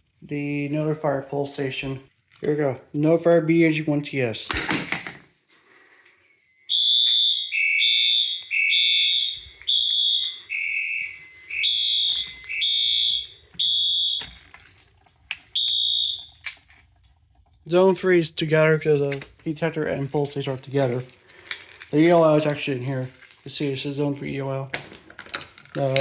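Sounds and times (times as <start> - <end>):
fire alarm horns beeping: 6.3 - 16.7.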